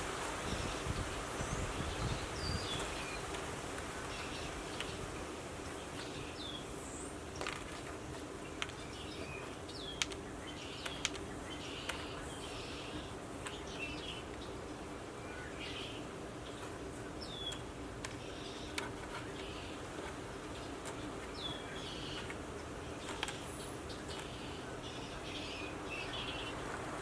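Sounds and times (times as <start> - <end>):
wind buffeting microphone: 0.0 - 5.3
faint insect-like hum: 0.0 - 27.0
small birds chirping: 0.4 - 26.9.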